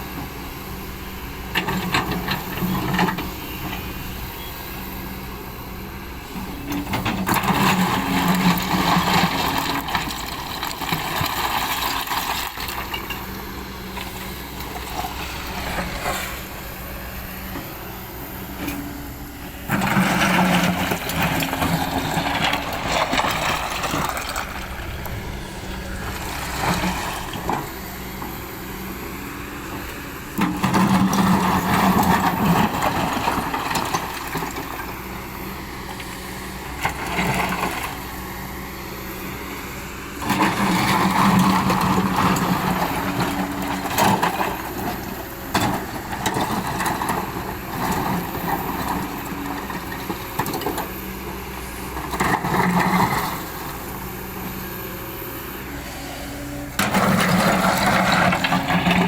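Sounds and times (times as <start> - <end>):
excavator diesel engine: 0.0 - 59.0.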